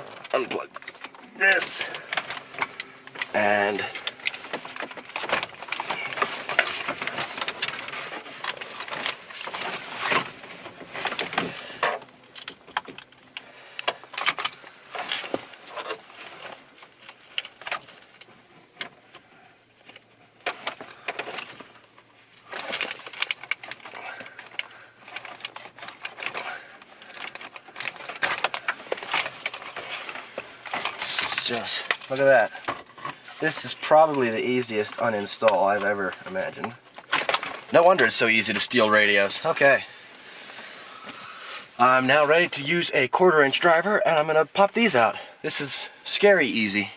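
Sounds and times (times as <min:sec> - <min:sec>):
plastic clicks and rattles: 0:22.5 - 0:33.2.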